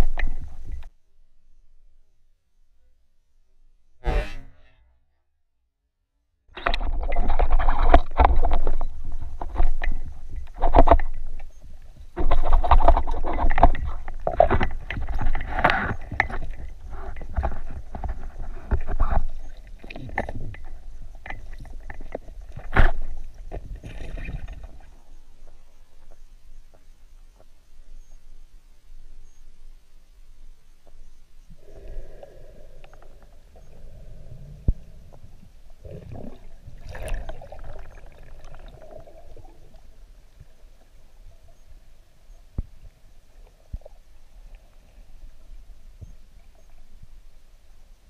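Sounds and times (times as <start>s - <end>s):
water sloshing and splashing: 12.2s - 25.0s, 32.8s - 40.5s.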